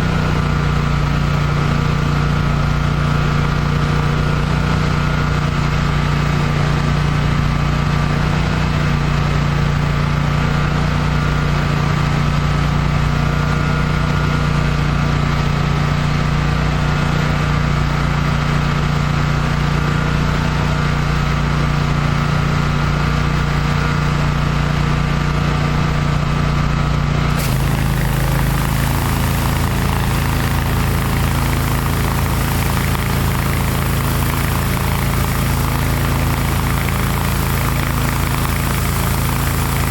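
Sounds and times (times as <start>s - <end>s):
pressure washer engine running: 0.0s - 39.9s
spray hiss: 27.3s - 39.9s.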